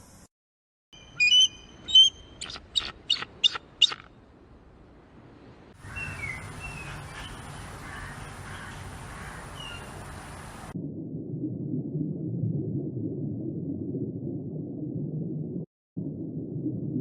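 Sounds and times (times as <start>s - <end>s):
bird calling: 1.0s - 4.2s, 5.8s - 10.7s
faint bird chirping: 5.8s - 10.6s.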